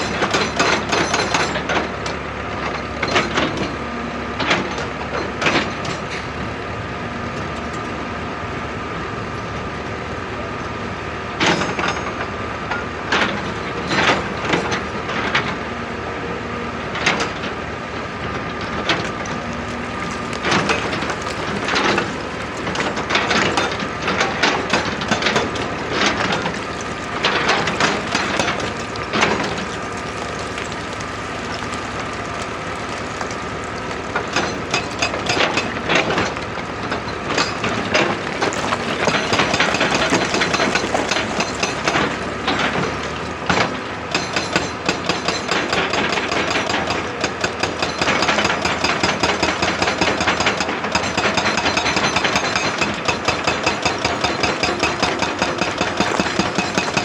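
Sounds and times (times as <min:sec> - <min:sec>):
excavator engine under load: 0:18.3 - 0:57.0
stone cracking and knocking: 0:19.0 - 0:35.9, 0:37.3 - 0:44.6, 0:53.2 - 0:57.0.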